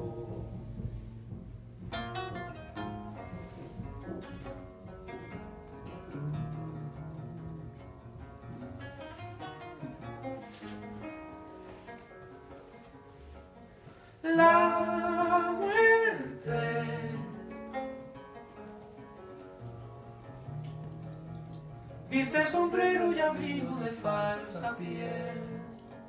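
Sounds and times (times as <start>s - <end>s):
low bass notes: 0.0s - 10.0s, 19.7s - 22.7s
plucked guitar notes: 0.0s - 26.0s.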